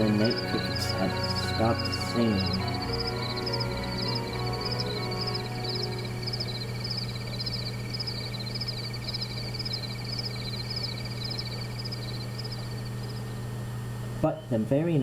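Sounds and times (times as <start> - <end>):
low hum: 0.0 - 14.2
crickets chirping: 0.0 - 14.5
frogs chirping: 0.0 - 14.6.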